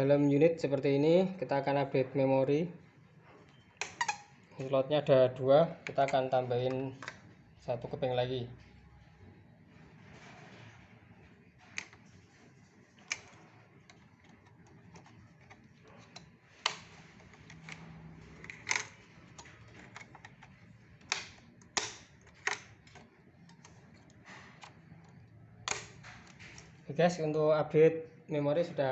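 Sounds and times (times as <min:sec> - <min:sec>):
plastic and metal clicks: 0:13.0 - 0:26.8.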